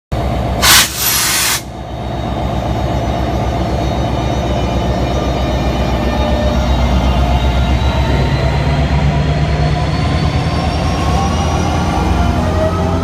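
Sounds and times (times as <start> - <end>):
diesel engine pulsing rumble: 0.2 - 13.0
air hiss burst: 0.6 - 1.7.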